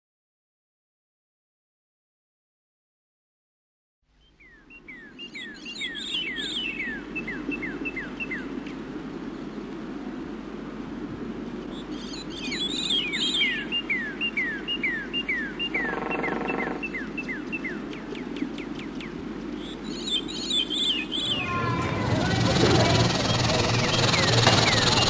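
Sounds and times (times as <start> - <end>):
low background hum: 4.1 - 25.0
bird chirping downslurred notes: 4.2 - 8.5, 12.0 - 25.0
high twittering calls: 4.2 - 8.7, 11.7 - 25.0.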